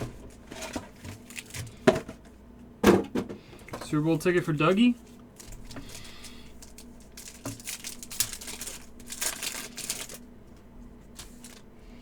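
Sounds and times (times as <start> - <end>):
card pack wrappers crinkling: 1.2 - 1.8, 5.4 - 11.7.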